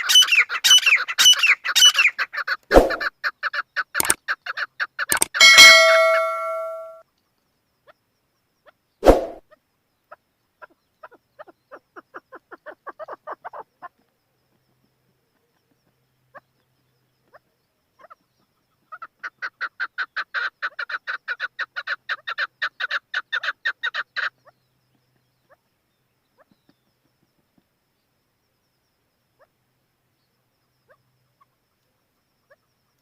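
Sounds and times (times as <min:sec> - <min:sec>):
partridge calling: 0:00.0 - 0:07.0, 0:10.1 - 0:13.9.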